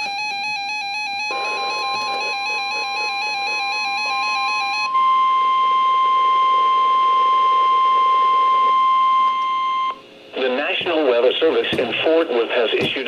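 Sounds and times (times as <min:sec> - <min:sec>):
steady high-pitched alarm tone: 0:00.0 - 0:10.0
warbling electronic alert tone: 0:01.3 - 0:04.9.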